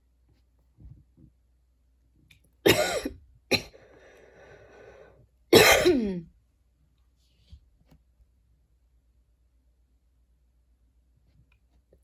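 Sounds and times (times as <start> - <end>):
woman coughing: 2.7 - 3.8, 5.5 - 6.3
rasping breath: 3.7 - 5.2.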